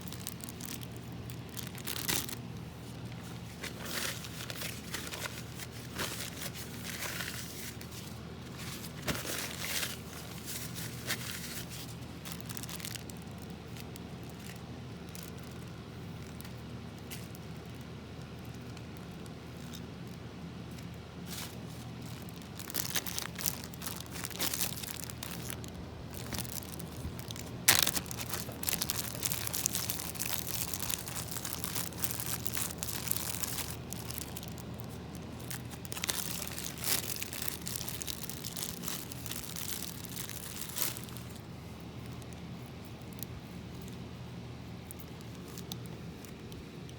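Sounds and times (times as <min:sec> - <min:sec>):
slime crackling and popping: 0:00.0 - 0:02.6, 0:10.7 - 0:19.3, 0:22.0 - 0:41.4.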